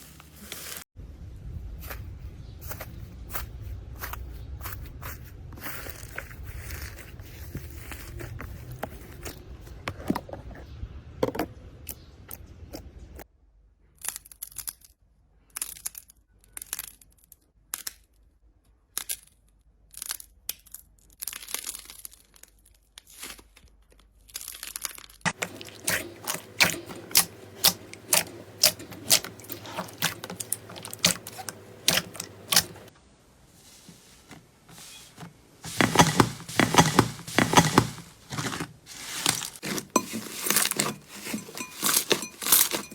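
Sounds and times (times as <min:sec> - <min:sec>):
slime squished by hand: 0:25.3 - 0:32.9.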